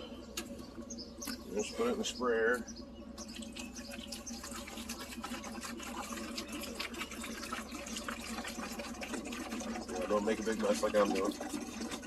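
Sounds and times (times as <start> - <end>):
liquid pouring and gurgling: 3.2 - 12.0.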